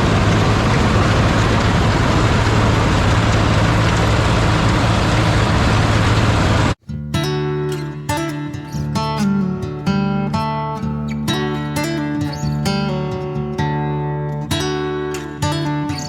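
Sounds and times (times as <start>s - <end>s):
heavy machine engine running: 0.0s - 6.8s
acoustic guitar music: 6.7s - 16.0s.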